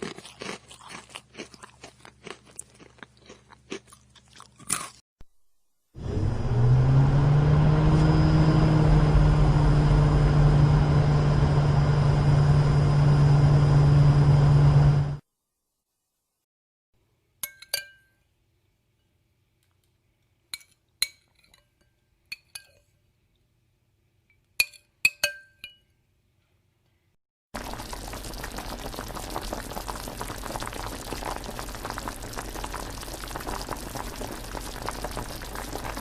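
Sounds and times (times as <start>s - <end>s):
glass clinking: 17.4s - 18.2s, 20.6s - 22.9s, 24.3s - 26.0s
bubbling liquid hiss: 27.6s - 36.0s.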